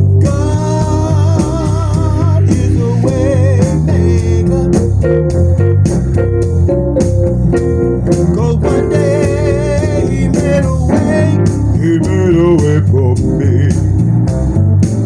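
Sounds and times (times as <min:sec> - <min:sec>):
guitar: 0:00.0 - 0:15.0
steady drum beat: 0:00.0 - 0:15.0
person singing: 0:00.2 - 0:04.9, 0:08.3 - 0:13.8.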